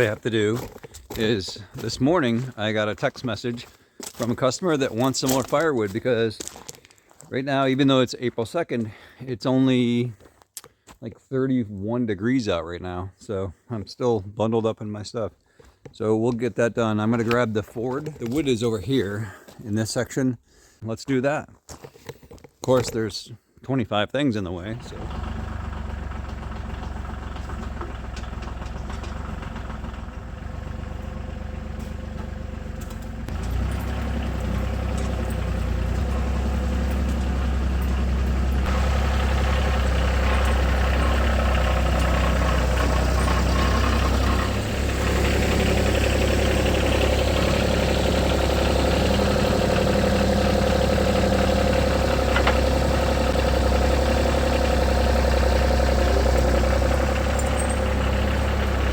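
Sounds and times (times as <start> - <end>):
car engine rumbling: 0.0 - 3.6, 24.6 - 58.9.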